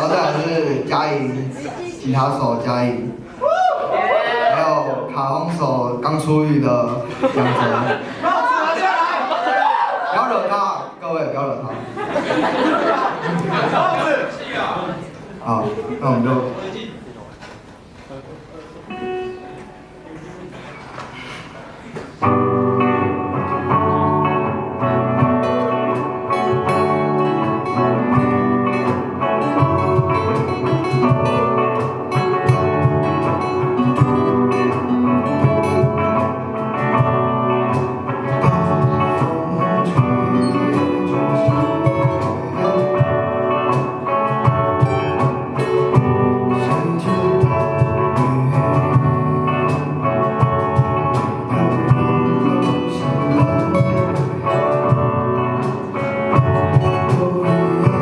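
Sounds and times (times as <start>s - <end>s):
guitars: 17.4s - 58.0s
bass guitar: 22.2s - 58.0s.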